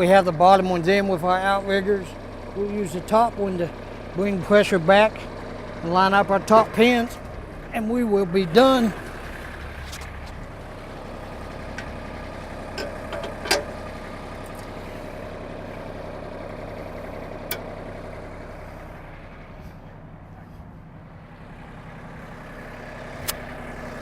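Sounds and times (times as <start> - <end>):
tractor diesel engine running: 0.0 - 24.0
backhoe hydraulics: 3.7 - 7.7, 8.5 - 24.0
sharp metal clicks and clunks: 12.7 - 13.8, 17.5 - 17.8.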